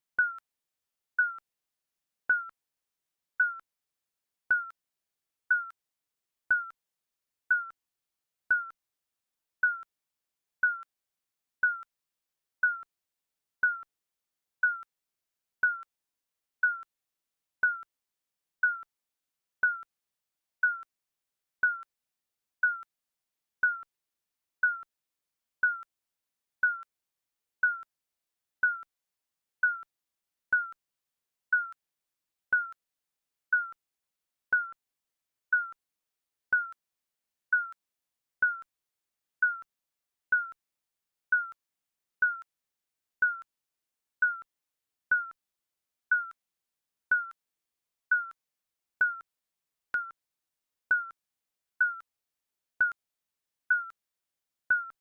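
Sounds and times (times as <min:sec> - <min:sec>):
timer beeping: 0:00.2 - 0:00.4, 0:01.2 - 0:01.4, 0:02.3 - 0:02.5, 0:03.4 - 0:03.6, 0:04.5 - 0:04.7, 0:05.5 - 0:05.7, 0:06.5 - 0:06.8, 0:07.5 - 0:07.8, 0:08.5 - 0:08.8, 0:09.6 - 0:09.9, 0:10.6 - 0:10.9, 0:11.6 - 0:11.9, 0:12.6 - 0:12.9, 0:13.6 - 0:13.9, 0:16.6 - 0:16.9, 0:17.6 - 0:17.9, 0:18.6 - 0:18.9, 0:19.6 - 0:19.8, 0:22.6 - 0:22.9, 0:23.6 - 0:23.9, 0:24.6 - 0:24.9, 0:25.6 - 0:25.8, 0:26.6 - 0:26.8, 0:27.6 - 0:27.9, 0:28.6 - 0:28.9, 0:29.6 - 0:29.9, 0:30.6 - 0:30.8, 0:31.5 - 0:31.8, 0:32.5 - 0:32.8, 0:33.5 - 0:33.8, 0:34.5 - 0:34.8, 0:35.5 - 0:35.8, 0:36.5 - 0:36.8, 0:37.5 - 0:37.8, 0:38.4 - 0:38.7, 0:39.4 - 0:39.6, 0:40.3 - 0:40.6, 0:41.3 - 0:41.6, 0:43.2 - 0:43.4, 0:44.2 - 0:44.4, 0:45.1 - 0:45.4, 0:46.1 - 0:46.4, 0:47.1 - 0:47.4, 0:48.1 - 0:48.4, 0:49.0 - 0:49.3, 0:50.0 - 0:50.2, 0:50.9 - 0:51.2, 0:51.8 - 0:52.1, 0:53.7 - 0:54.0, 0:54.7 - 0:55.0.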